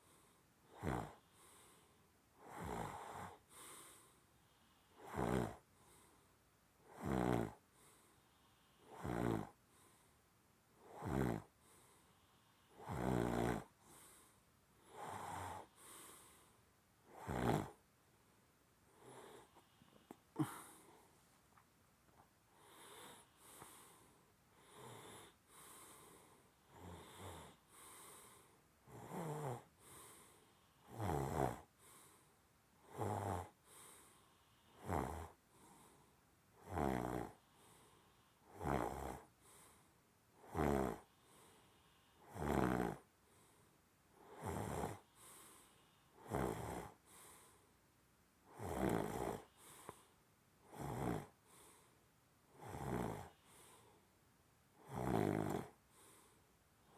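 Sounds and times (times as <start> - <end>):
person snoring: 0.7 - 1.3, 2.4 - 3.4, 5.0 - 5.6, 6.9 - 7.6, 8.8 - 9.6, 10.8 - 11.5, 12.8 - 13.7, 17.1 - 17.8, 19.0 - 21.0, 28.9 - 29.7, 30.9 - 31.7, 32.9 - 33.6, 34.8 - 35.4, 36.6 - 37.4, 38.5 - 39.3, 40.4 - 41.1, 42.2 - 43.0, 44.2 - 45.1, 46.2 - 47.0, 48.5 - 49.8, 50.7 - 51.4, 52.6 - 53.9, 54.8 - 55.8.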